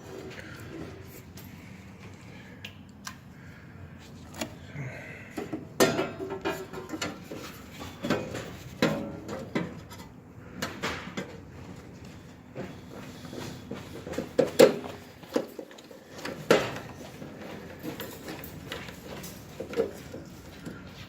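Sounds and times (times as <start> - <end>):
objects clattering: 5.4 - 21.0.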